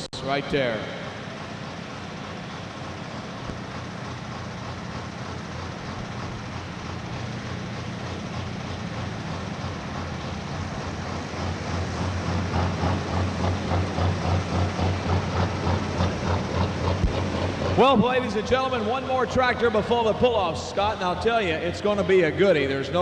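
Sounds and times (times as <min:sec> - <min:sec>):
diesel engine pulsing: 0:00.0 - 0:23.0.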